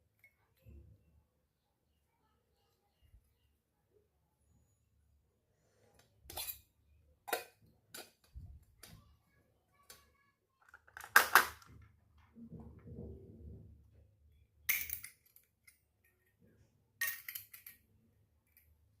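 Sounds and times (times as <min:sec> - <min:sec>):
toy kitchenware clinking: 0:06.0 - 0:09.0, 0:10.6 - 0:11.8, 0:14.7 - 0:16.4, 0:17.0 - 0:18.8.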